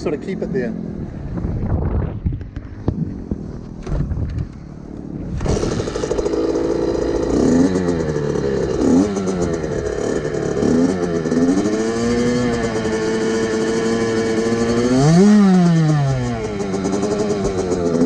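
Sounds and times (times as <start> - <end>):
small motorbike engine revving: 5.2 - 18.0.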